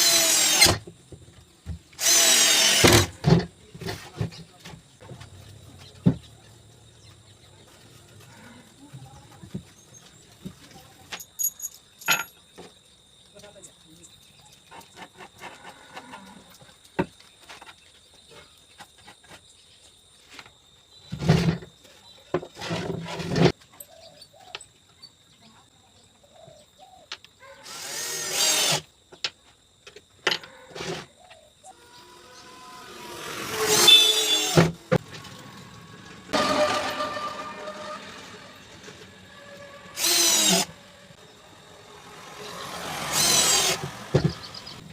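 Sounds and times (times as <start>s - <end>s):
handheld electric drill: 0.0s - 0.8s, 2.0s - 3.2s, 27.7s - 28.9s, 31.9s - 34.8s, 39.9s - 40.8s, 42.9s - 44.5s.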